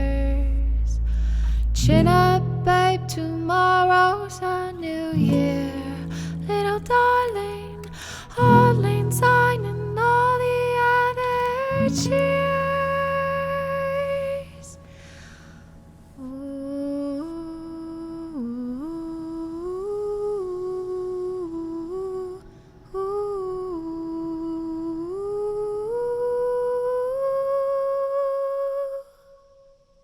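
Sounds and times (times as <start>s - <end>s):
person humming a slow melody: 0.0s - 15.1s.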